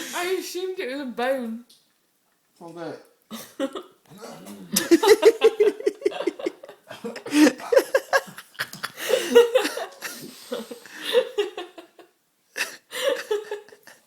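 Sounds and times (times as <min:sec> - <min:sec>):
people laughing: 0:04.7 - 0:12.0, 0:12.6 - 0:14.0.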